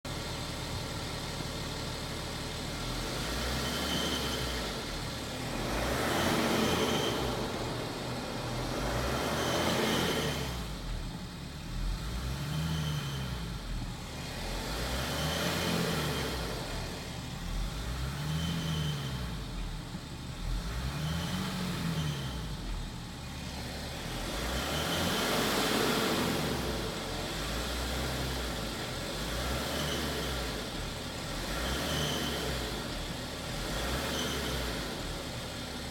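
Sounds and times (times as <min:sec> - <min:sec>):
car engine revving: 0:00.1 - 0:35.9
turbocharger whistle: 0:03.4 - 0:10.7, 0:12.4 - 0:13.5, 0:18.2 - 0:19.4, 0:33.8 - 0:34.9.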